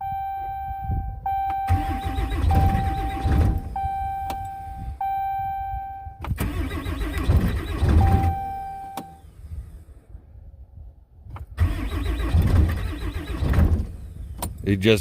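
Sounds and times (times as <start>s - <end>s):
dashboard warning chime: 0.0s - 6.2s, 7.9s - 9.2s
diesel engine cranking: 1.4s - 5.0s, 6.2s - 10.2s, 11.2s - 14.7s.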